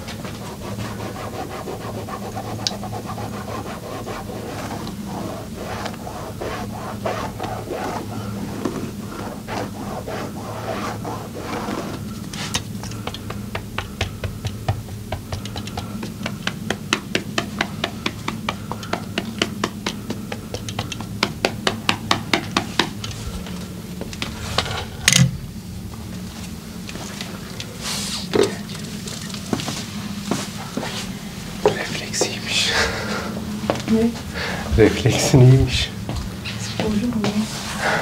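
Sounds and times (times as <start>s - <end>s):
percussive massage hand strikes: 13.0s - 22.9s.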